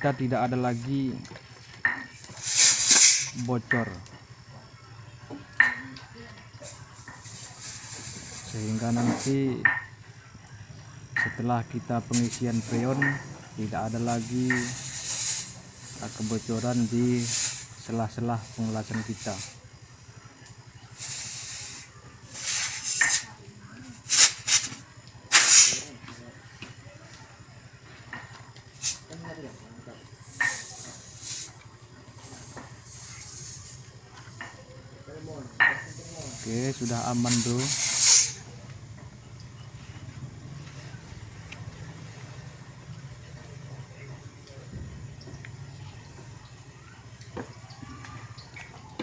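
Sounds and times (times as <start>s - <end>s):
refrigerator compressor humming: 0.0s - 37.6s, 38.2s - 49.0s
compressed air hissing: 1.8s - 4.5s, 6.5s - 10.0s, 11.2s - 26.1s, 28.6s - 29.2s, 30.1s - 38.6s.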